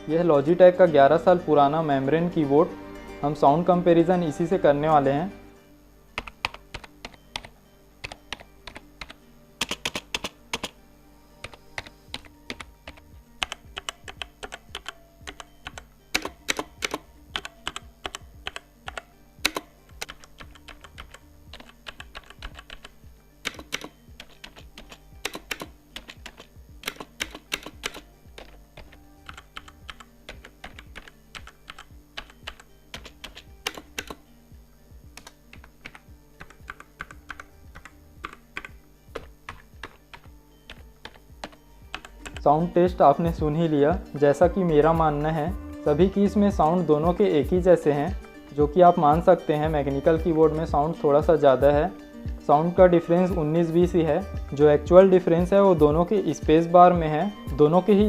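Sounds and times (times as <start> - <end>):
keyboard keystroke clicks: 6.2 - 10.8, 11.4 - 34.2.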